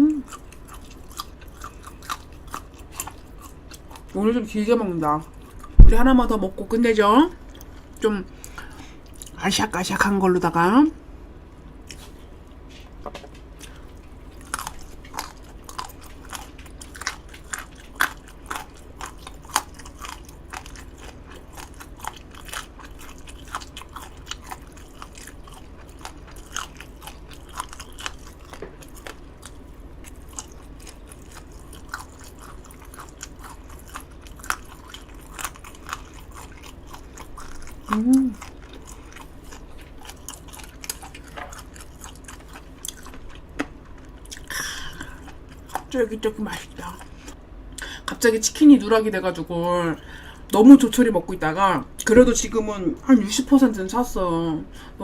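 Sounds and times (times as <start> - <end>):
person chewing crunchy food: 0.2 - 4.2, 13.4 - 46.0
person humming: 37.9 - 38.4.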